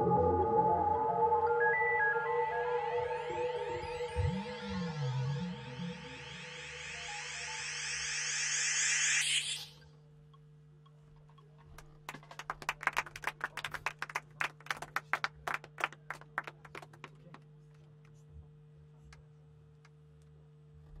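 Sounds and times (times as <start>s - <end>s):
audience clapping: 11.8s - 18.1s.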